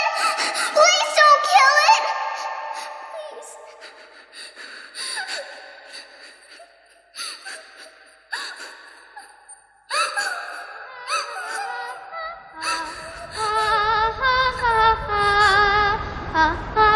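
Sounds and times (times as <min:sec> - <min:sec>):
child sobbing cries: 0:00.0 - 0:01.2, 0:02.8 - 0:13.9.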